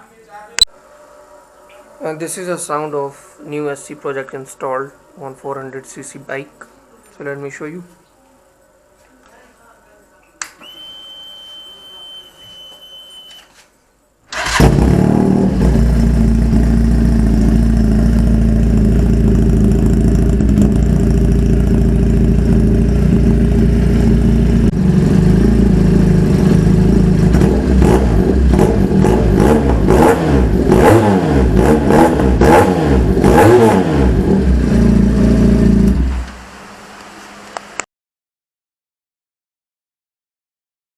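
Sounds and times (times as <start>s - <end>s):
motorcycle engine idling and revving: 14.4s - 36.8s.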